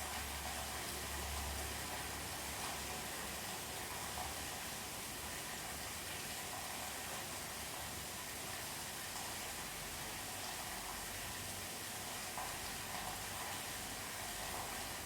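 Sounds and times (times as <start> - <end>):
steady rain heard indoors: 0.0 - 15.0.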